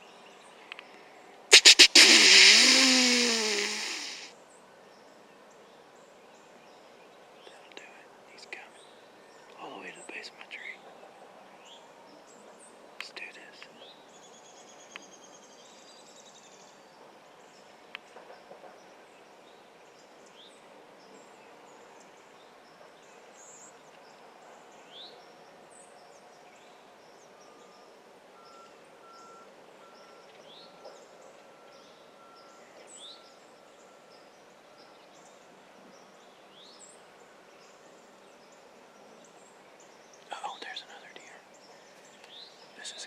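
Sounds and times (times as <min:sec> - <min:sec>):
faint steady hiss: 0:00.7 - 0:04.3
bird chirps: 0:01.5 - 0:04.3.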